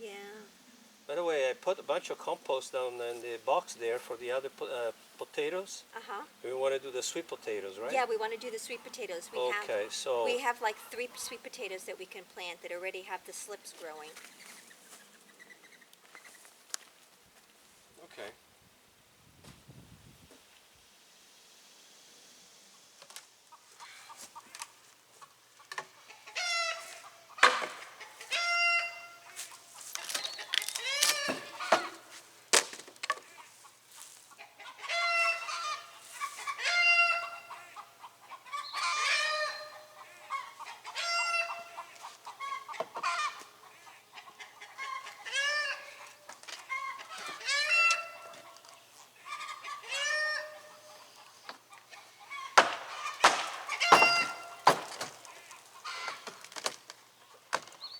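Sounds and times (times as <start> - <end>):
chickens calling: 1.1 - 16.5, 23.4 - 32.5, 33.1 - 57.9
sharp knocks: 27.4 - 27.9, 52.6 - 55.3.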